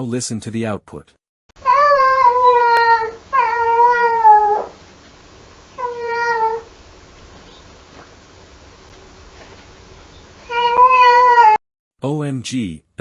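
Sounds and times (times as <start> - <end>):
cat meowing: 1.6 - 4.8, 5.7 - 6.7, 10.4 - 11.6
faint hiss: 2.0 - 10.5.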